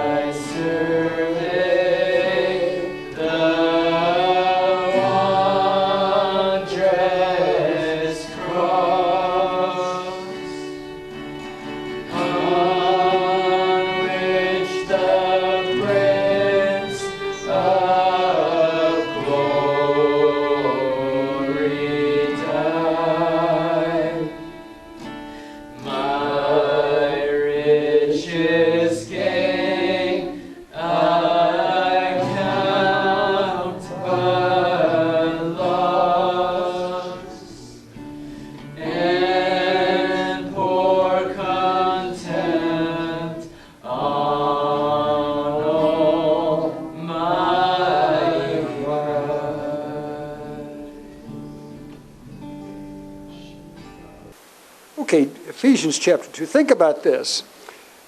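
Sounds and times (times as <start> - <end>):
musical accompaniment: 0.0 - 42.8
voices singing: 0.0 - 52.3.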